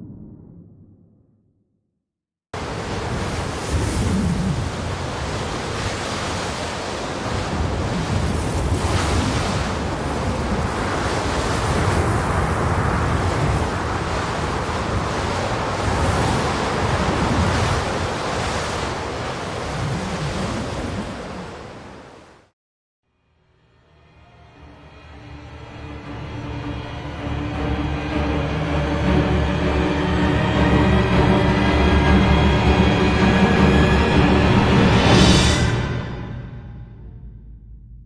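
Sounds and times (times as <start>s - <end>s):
deep rumble: 0.0s - 1.6s, 35.5s - 38.0s.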